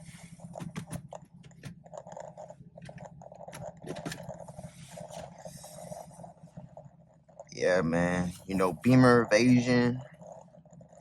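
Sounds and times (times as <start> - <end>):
car engine drone inside cabin: 0.0 - 11.0
clicks and crackles: 0.5 - 5.3.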